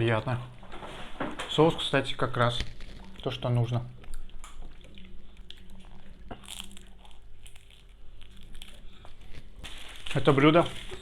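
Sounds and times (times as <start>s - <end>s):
chewing crispy pastry: 2.4s - 11.0s.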